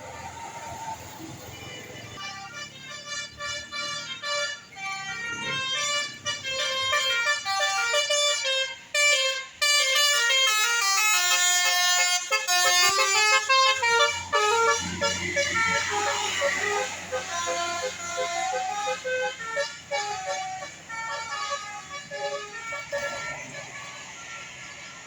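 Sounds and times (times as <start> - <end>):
bus multi-tone horn melody: 0.0 - 25.0
low engine rumble: 11.6 - 24.3.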